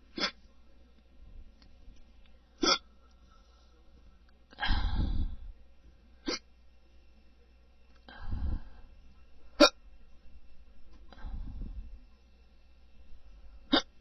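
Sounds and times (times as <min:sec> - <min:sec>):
person hiccuping: 0:00.2 - 0:00.4, 0:02.6 - 0:02.9, 0:06.2 - 0:06.4, 0:13.7 - 0:14.0.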